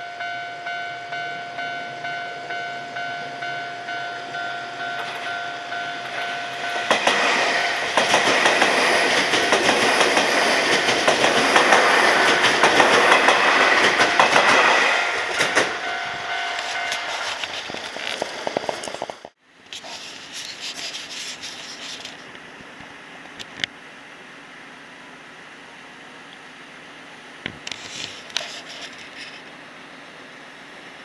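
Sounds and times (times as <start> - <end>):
level crossing bell ringing: 0.0 - 8.0, 12.6 - 18.2
train wheels clattering: 4.4 - 19.4.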